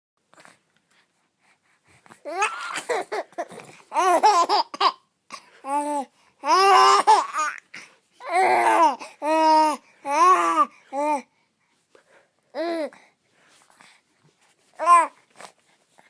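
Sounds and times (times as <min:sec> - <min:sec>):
baby laughing and babbling: 0:02.2 - 0:11.3, 0:14.8 - 0:15.2.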